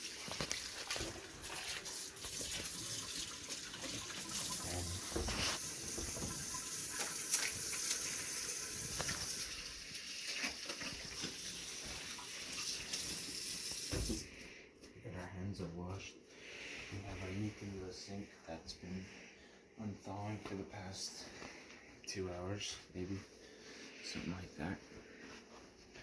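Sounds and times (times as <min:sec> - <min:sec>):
tap running into sink: 0:00.4 - 0:08.1, 0:12.9 - 0:14.3.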